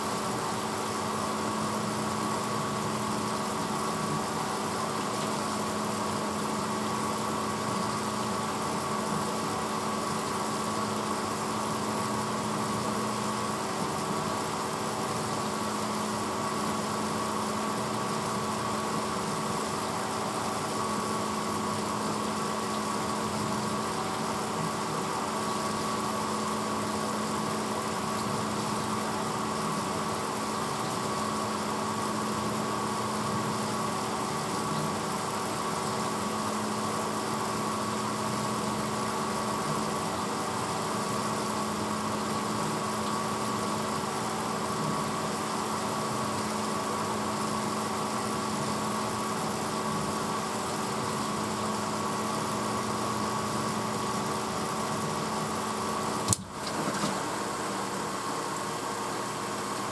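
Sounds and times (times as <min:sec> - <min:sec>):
dishwasher running: 0:00.0 - 0:59.9.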